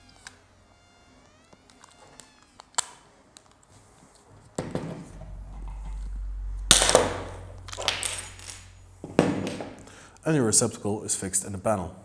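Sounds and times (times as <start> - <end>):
riveting tool rumble: 5.0 - 10.2
small rattle: 5.1 - 9.3.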